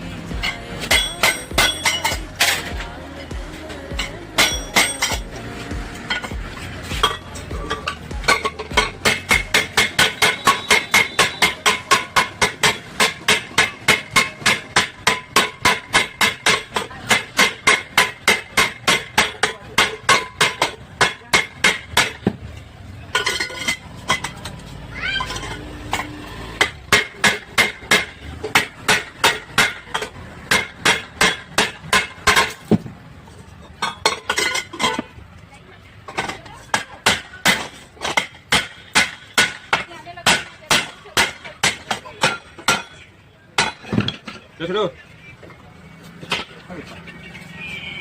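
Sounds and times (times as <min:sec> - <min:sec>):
hammer beating on metal: 0:00.3 - 0:22.4, 0:25.4 - 0:32.7, 0:36.2 - 0:44.2.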